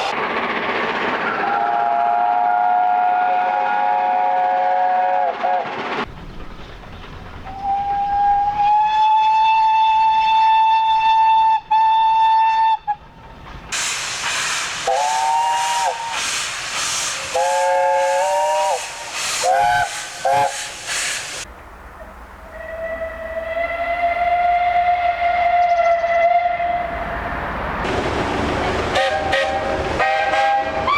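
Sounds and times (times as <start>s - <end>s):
steam locomotive whistle blast: 1.3s - 5.7s, 7.5s - 13.0s, 13.8s - 21.4s, 22.5s - 26.9s, 28.9s - 30.9s
loud steam hiss: 13.7s - 21.5s.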